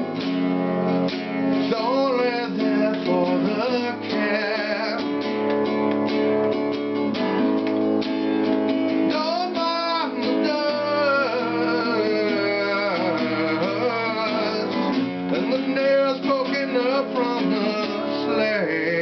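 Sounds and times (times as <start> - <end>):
acoustic guitar strumming: 0.0 - 19.0
person singing: 1.6 - 5.7, 9.1 - 19.0.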